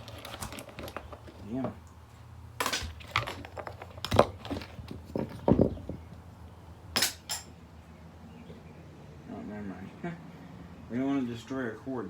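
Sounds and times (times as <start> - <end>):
small objects knocking and clattering: 0.0 - 1.8, 2.6 - 6.3.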